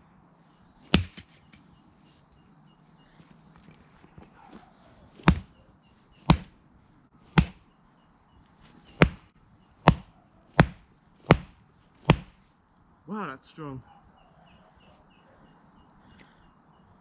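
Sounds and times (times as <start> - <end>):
axe chopping firewood: 0.9 - 1.3, 5.2 - 5.5, 6.3 - 6.6, 7.3 - 7.6, 8.9 - 9.3, 9.9 - 12.4.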